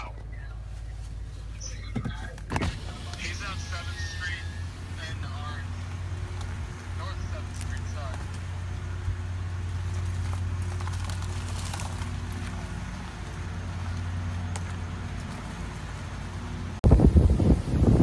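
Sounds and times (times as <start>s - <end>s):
low hum: 0.0s - 18.0s
hurricane wind buffeting microphone: 16.8s - 18.0s.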